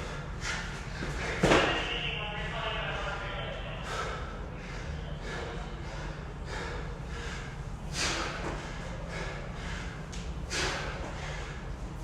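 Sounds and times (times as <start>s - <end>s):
person breathing hard: 0.0s - 1.4s, 3.0s - 12.0s
steady low hum: 0.0s - 12.0s.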